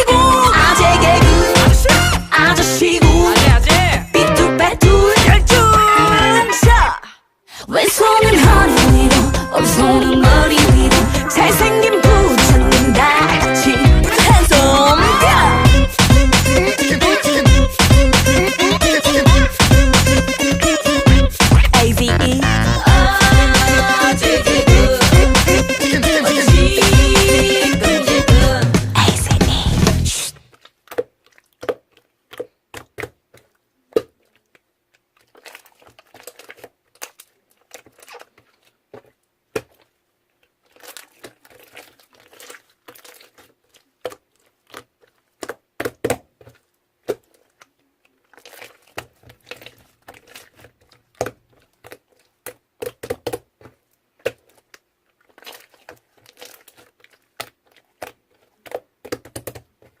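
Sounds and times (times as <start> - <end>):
rustling and crinkling: 30.3 - 60.0.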